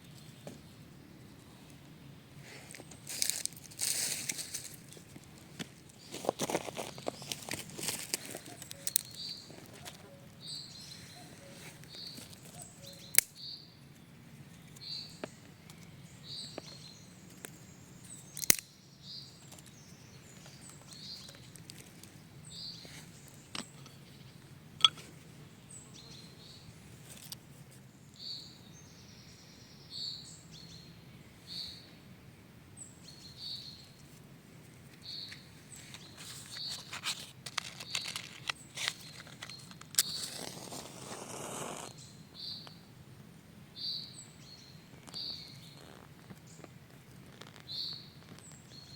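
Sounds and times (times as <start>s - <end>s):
faint forest background: 0.0s - 48.9s
bird chirping: 8.2s - 26.7s, 28.0s - 32.1s, 32.8s - 34.0s, 35.0s - 37.0s, 41.8s - 42.9s, 43.8s - 46.7s, 47.6s - 48.9s.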